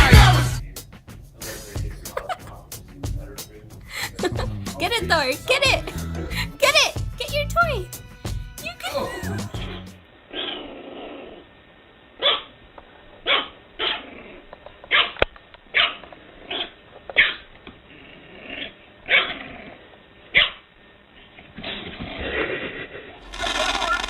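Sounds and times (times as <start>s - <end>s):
dog barking: 12.2s - 12.5s, 13.2s - 14.0s, 14.9s - 17.5s, 19.1s - 19.4s, 20.3s - 20.6s.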